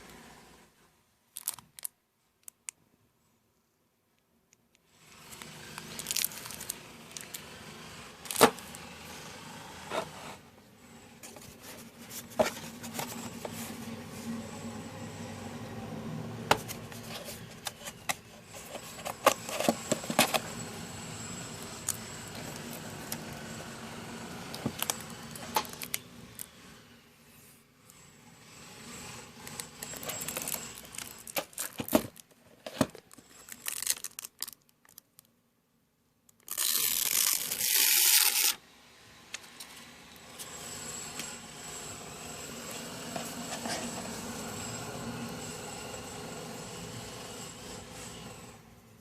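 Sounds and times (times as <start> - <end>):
plastic crinkling and tearing: 1.3 - 1.9, 5.4 - 7.4, 29.5 - 35.3, 36.4 - 38.6.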